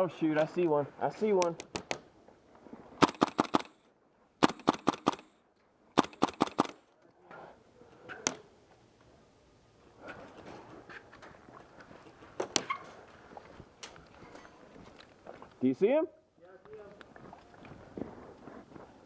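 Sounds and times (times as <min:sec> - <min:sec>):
airsoft rifle shots: 0:03.0 - 0:03.8, 0:04.4 - 0:05.3, 0:06.0 - 0:06.8.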